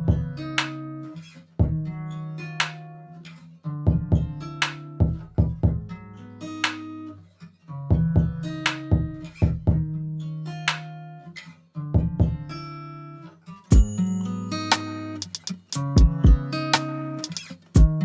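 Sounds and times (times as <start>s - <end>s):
steady beat: 0.0s - 0.7s, 1.6s - 1.9s, 3.9s - 5.9s, 7.9s - 9.9s, 12.0s - 12.5s, 13.7s - 18.0s
plucked guitar: 0.0s - 18.0s.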